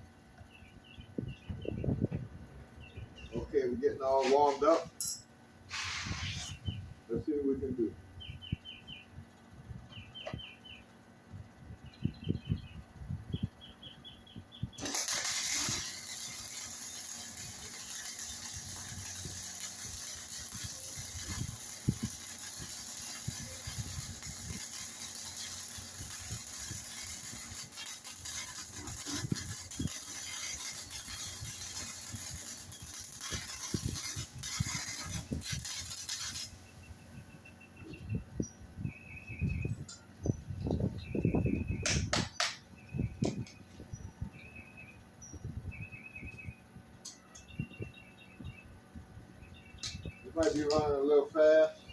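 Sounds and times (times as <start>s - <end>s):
welder crackling hiss: 3.4s - 4.9s, 5.7s - 6.8s, 14.8s - 37.0s, 49.8s - 51.8s.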